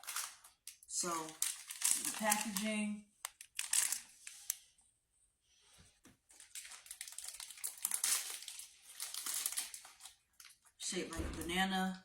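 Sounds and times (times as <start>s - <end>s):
plastic wrapper crinkling: 0.0s - 4.7s, 6.2s - 10.8s.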